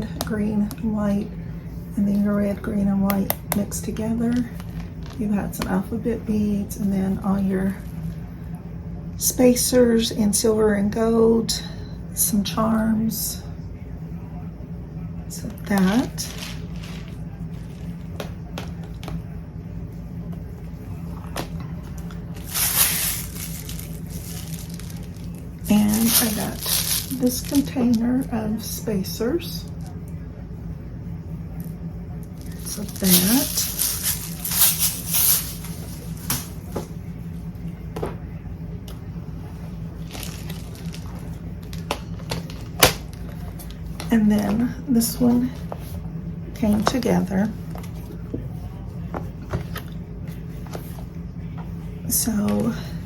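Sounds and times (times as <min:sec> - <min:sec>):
steady low hum: 0:00.0 - 0:53.0
packaging crinkling: 0:15.8 - 0:18.0, 0:22.3 - 0:27.9, 0:32.4 - 0:36.6, 0:40.0 - 0:43.8
plastic containers clicking and rustling: 0:15.8 - 0:19.2, 0:25.9 - 0:28.0, 0:40.1 - 0:44.1.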